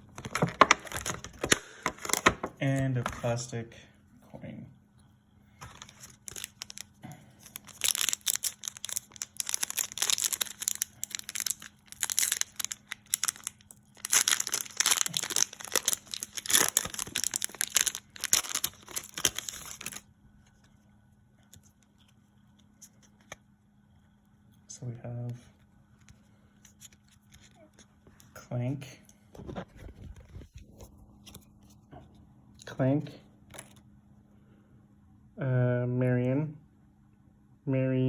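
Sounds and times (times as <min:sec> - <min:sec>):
foil pack tearing and crinkling: 0:00.0 - 0:02.5, 0:05.6 - 0:20.0.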